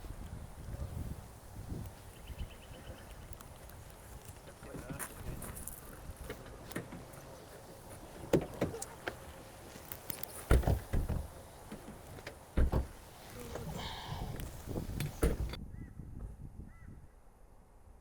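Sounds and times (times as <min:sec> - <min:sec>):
car doors shutting: 0:10.3 - 0:15.6.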